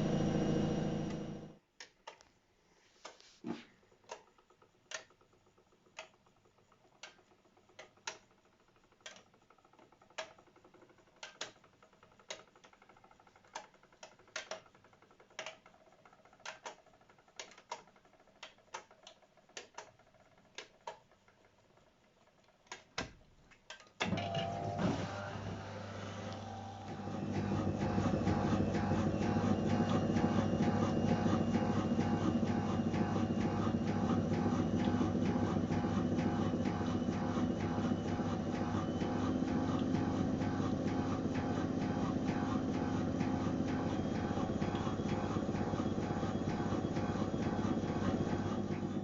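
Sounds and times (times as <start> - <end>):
washing machine motor hum: 0.0 - 1.6, 24.0 - 49.0
washing machine ticks and clicks: 3.8 - 25.4, 26.3 - 49.0.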